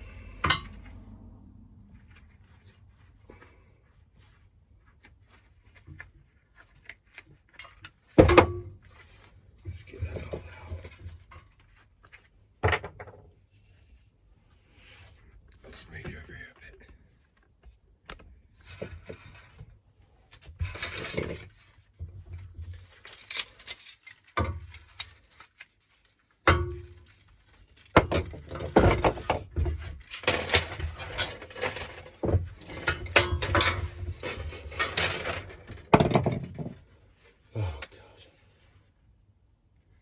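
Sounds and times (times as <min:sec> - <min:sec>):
pull-starter parts clinking and rattling: 0:20.6 - 0:21.7, 0:28.0 - 0:36.7.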